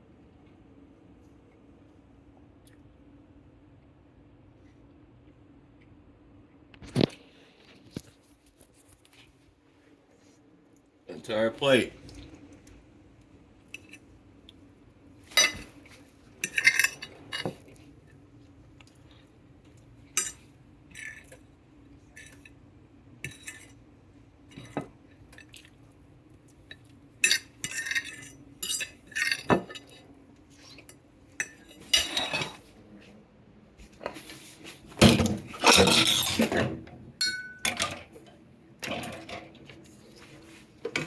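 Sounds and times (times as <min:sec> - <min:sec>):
faint steady hum: 0:00.0 - 0:41.0
plates and utensils clinking: 0:15.3 - 0:17.7, 0:31.4 - 0:32.7, 0:35.0 - 0:38.1.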